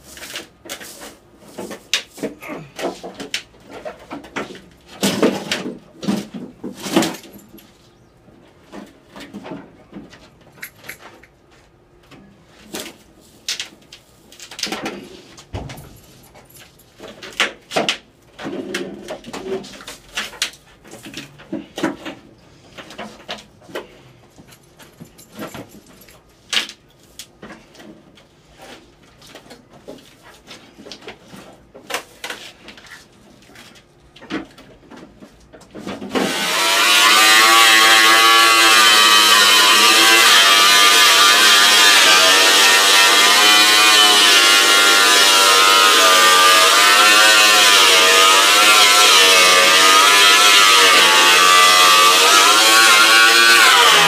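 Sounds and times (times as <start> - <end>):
knocks and clatter: 15.5 - 19.6
grinder cutting sheet metal: 36.0 - 54.0.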